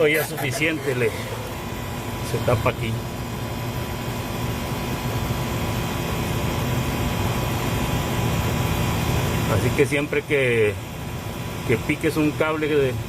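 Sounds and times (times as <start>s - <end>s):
low mechanical rumble: 0.0s - 9.7s.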